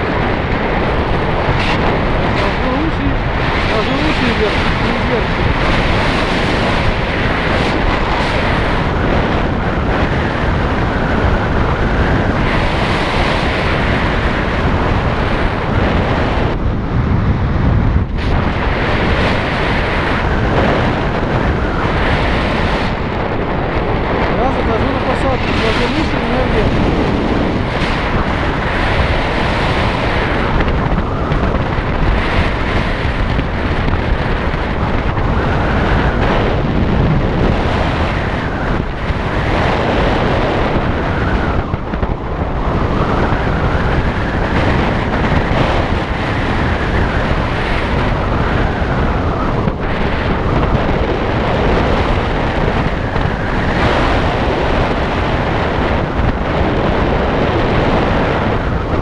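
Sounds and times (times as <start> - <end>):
wind buffeting microphone: 0.0 - 59.0.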